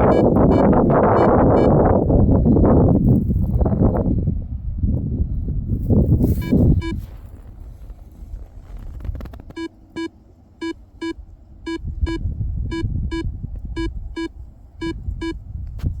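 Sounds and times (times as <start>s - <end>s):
electronic beeper beeping: 0.0s - 1.8s, 6.4s - 7.0s
low rumbling noise: 0.0s - 15.5s.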